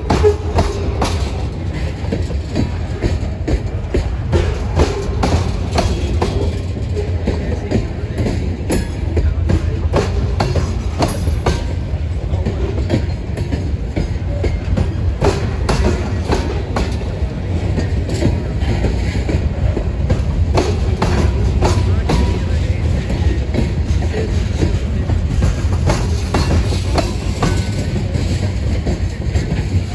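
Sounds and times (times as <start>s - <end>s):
freight train rolling past: 0.0s - 29.9s
wheels clanking over rail joints: 0.0s - 29.9s.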